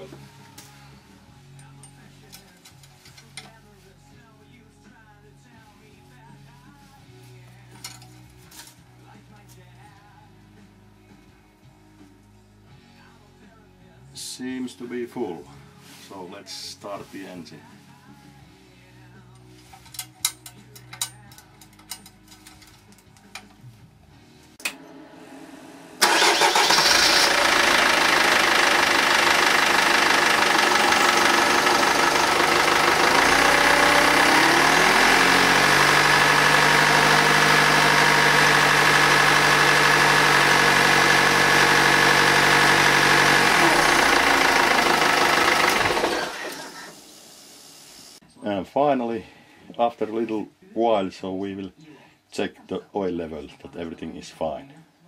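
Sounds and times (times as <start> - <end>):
diesel engine starting and idling: 24.6 - 47.6.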